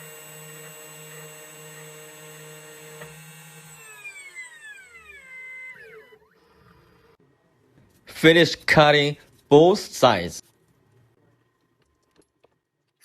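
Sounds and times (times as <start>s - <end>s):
key cutting machine motor whine: 0.0s - 6.4s.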